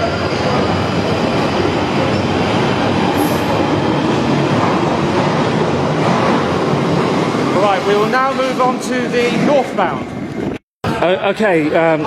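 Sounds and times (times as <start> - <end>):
train wheels on rails: 0.0 - 10.6.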